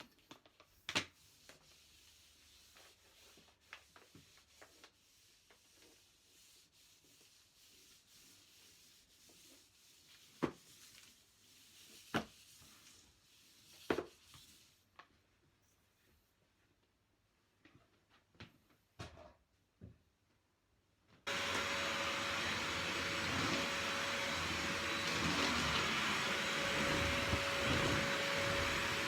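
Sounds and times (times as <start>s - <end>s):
mop rubbing on wooden floor: 1.1s - 15.0s, 21.3s - 29.0s.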